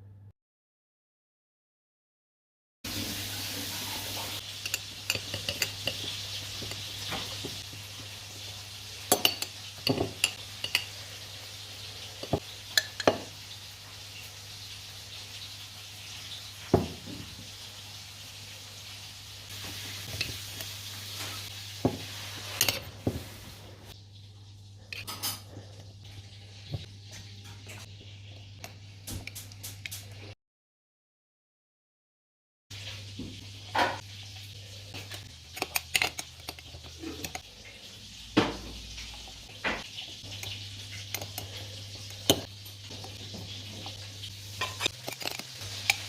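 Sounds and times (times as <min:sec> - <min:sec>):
utensils clinking against pots: 0:02.9 - 0:11.1, 0:12.0 - 0:13.4, 0:19.5 - 0:23.4, 0:24.9 - 0:25.7, 0:34.9 - 0:46.0.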